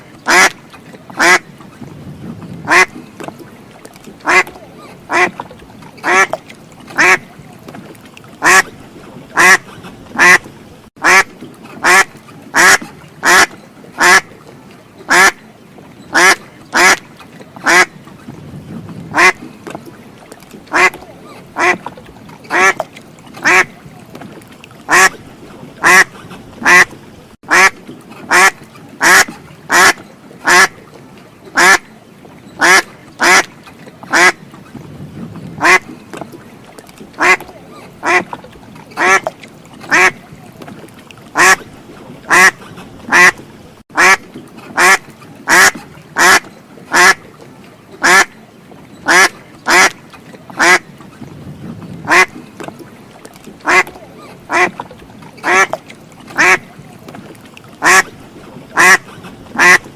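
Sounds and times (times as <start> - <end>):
duck quacking: 0.3 - 0.6, 1.2 - 1.4, 2.6 - 2.9, 4.2 - 5.3, 6.0 - 6.4, 7.0 - 7.3, 8.4 - 8.7, 9.4 - 9.6, 10.2 - 14.3, 15.1 - 15.4, 16.1 - 17.0, 17.6 - 17.9, 19.1 - 19.4, 20.7 - 21.8, 22.5 - 22.8, 23.4 - 23.8, 24.9 - 25.2, 25.8 - 26.9, 27.5 - 27.7, 28.3 - 30.7, 31.6 - 31.8, 32.6 - 33.5, 34.1 - 34.4, 35.6 - 35.8, 37.2 - 37.4, 38.0 - 38.2, 39.0 - 39.3, 39.9 - 40.2, 41.4 - 41.6, 42.3 - 43.4, 44.0 - 44.2, 44.8 - 47.2, 48.0 - 48.3, 49.1 - 50.0, 50.6 - 50.8, 52.1 - 52.3, 53.6 - 53.9, 54.5 - 54.7, 55.4 - 55.8, 56.4 - 56.6, 57.8 - 58.1, 58.8 - 59.0, 59.6 - 59.8.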